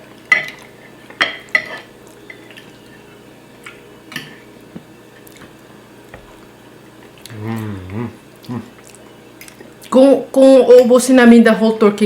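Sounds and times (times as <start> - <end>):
wet mouth smacks of chewing: 8.4 - 9.9.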